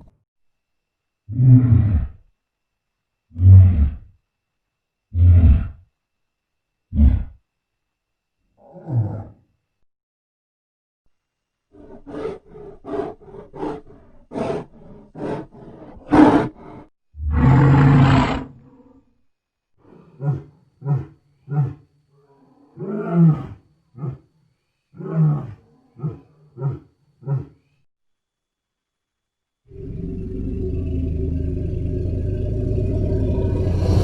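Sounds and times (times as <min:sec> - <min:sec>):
creature short deep calls: 0:11.8 - 0:18.9
creature long loud roar: 0:11.8 - 0:19.1, 0:19.8 - 0:24.2, 0:29.7 - 0:34.0.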